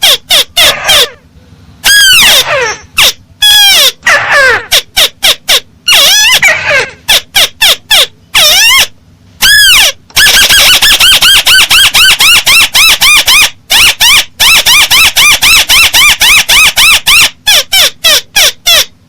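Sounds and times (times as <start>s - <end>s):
crake calling: 0.0s - 19.0s.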